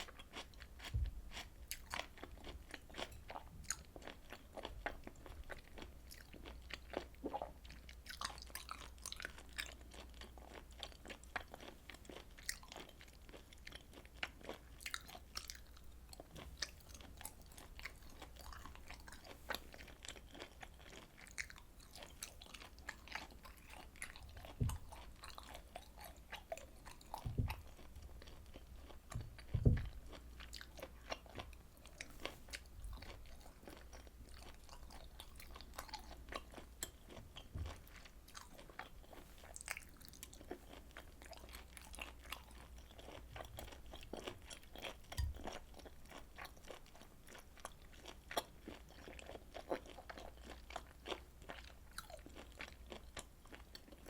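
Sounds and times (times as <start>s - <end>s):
close chewing: 0.0s - 54.0s
faint low hum: 0.0s - 54.0s
low thumps: 24.6s - 24.9s, 27.2s - 27.7s, 29.1s - 30.0s.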